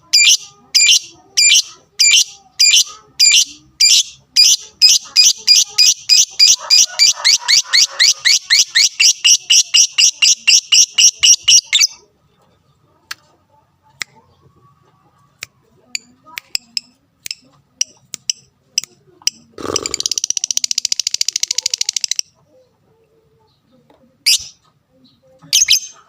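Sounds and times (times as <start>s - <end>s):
lovebird chattering call: 0.2s - 12.0s, 17.8s - 22.2s.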